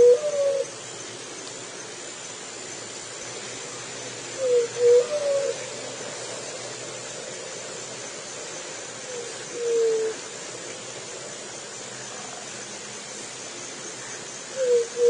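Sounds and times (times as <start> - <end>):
dove cooing: 0.0 - 0.7, 4.3 - 5.8, 9.0 - 10.3, 14.0 - 15.0
steady hiss: 0.0 - 15.0.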